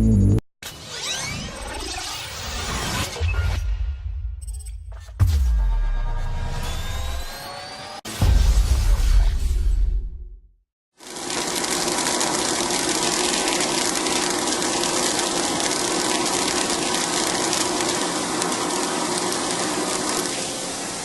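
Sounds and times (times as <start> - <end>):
machine hum: 11.0 - 21.0
machine hissing rush: 14.2 - 21.0.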